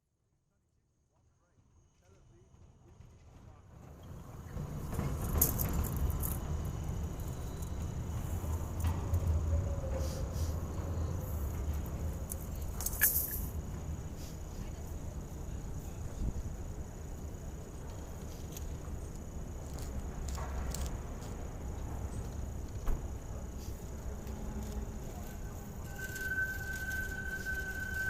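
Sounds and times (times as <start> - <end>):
thin high-pitched tone: 25.8 - 28.0.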